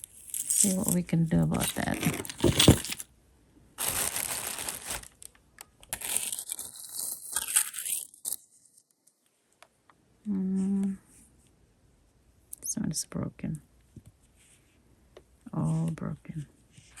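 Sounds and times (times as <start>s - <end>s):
plastic bag crinkling: 0.0s - 3.0s, 3.8s - 8.2s.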